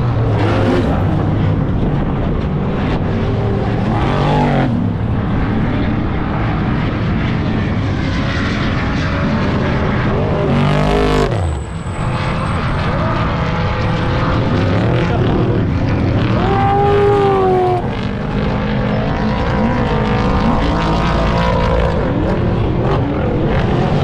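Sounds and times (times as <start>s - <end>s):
loud engines revving: 0.0s - 24.0s.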